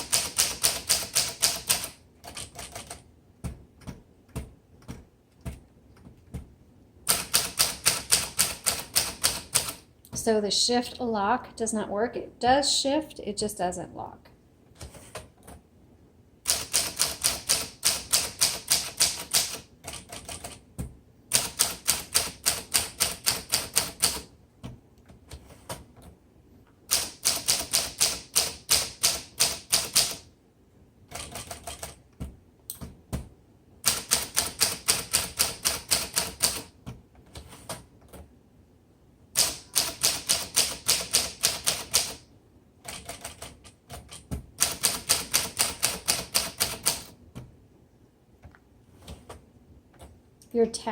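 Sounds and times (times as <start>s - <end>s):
manual typewriter typing: 0.0s - 6.4s, 7.1s - 9.8s, 16.4s - 20.6s, 21.3s - 24.3s, 26.9s - 30.3s, 31.1s - 32.9s, 33.8s - 38.3s, 39.3s - 42.2s, 42.8s - 47.2s.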